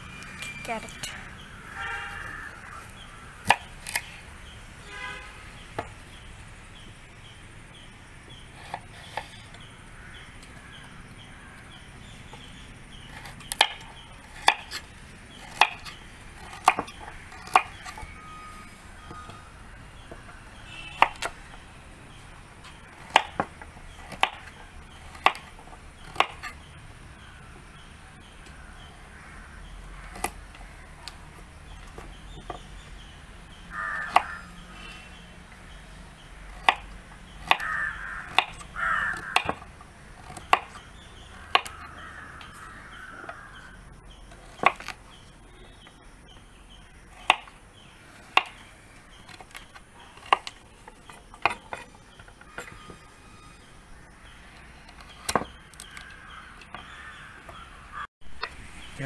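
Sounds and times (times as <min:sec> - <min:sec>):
crows cawing: 0:01.4 - 0:03.8, 0:09.9 - 0:11.7, 0:28.5 - 0:31.0, 0:33.7 - 0:35.1, 0:37.4 - 0:39.6, 0:41.2 - 0:43.8, 0:55.8 - 0:58.1.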